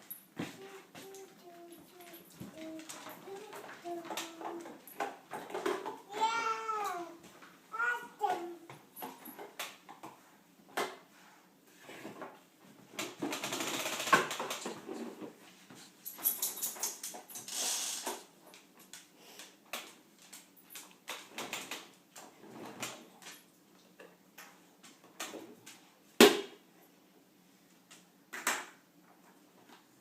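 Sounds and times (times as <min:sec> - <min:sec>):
toy lawnmower clicks and rattles: 0:13.0 - 0:14.8, 0:16.5 - 0:18.2.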